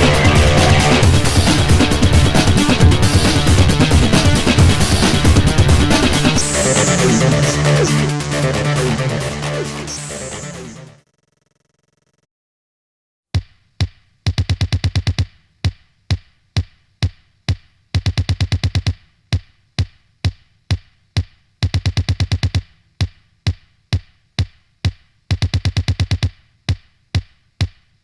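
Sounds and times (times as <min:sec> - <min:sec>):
electronic music with drum-machine beat: 0:00.0 - 0:11.0.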